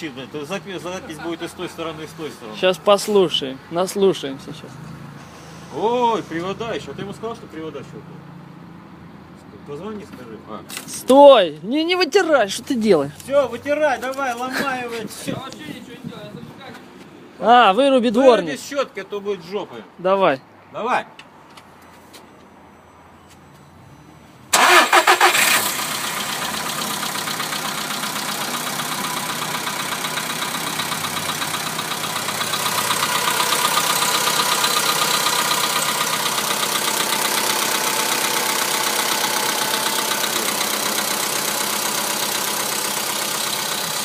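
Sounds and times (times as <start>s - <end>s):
car engine idling with clatter: 24.5s - 44.0s
starter motor cranking: 24.6s - 26.9s.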